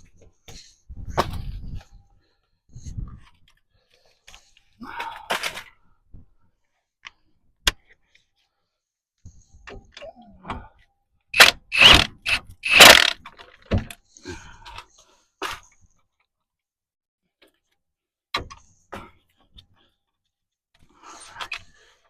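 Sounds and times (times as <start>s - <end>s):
ratchet wrench clicking: 11.4s - 13.2s.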